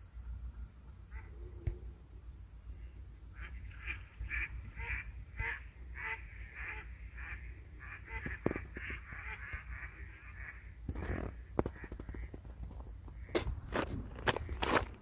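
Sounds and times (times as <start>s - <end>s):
low steady rumble: 0.0s - 15.0s
bird giving rough calls: 3.4s - 12.5s.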